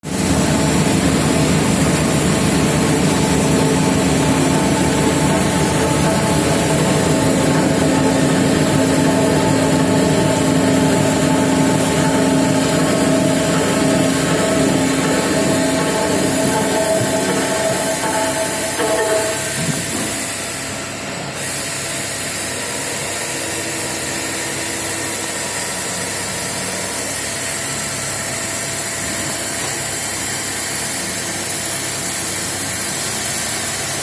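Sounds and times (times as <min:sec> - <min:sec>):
milling machine humming: 0:00.1 - 0:34.0.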